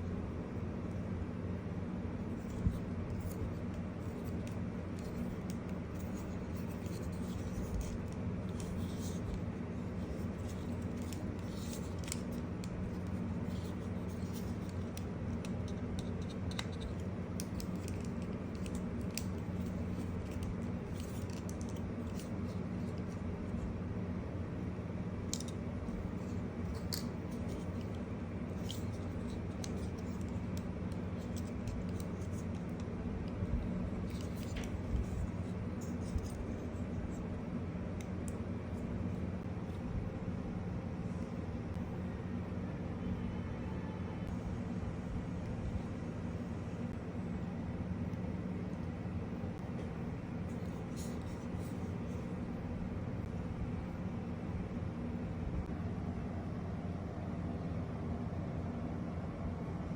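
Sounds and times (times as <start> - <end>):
steady low hum: 0.0 - 59.9
packaging scratches and clicks: 2.2 - 23.7.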